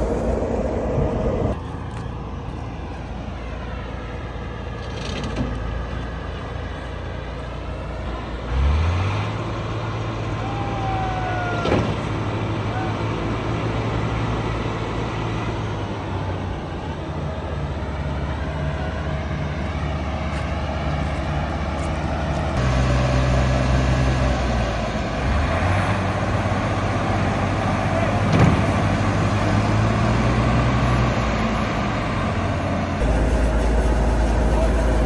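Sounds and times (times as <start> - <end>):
diesel engine running: 0.0 - 1.6, 12.2 - 35.0.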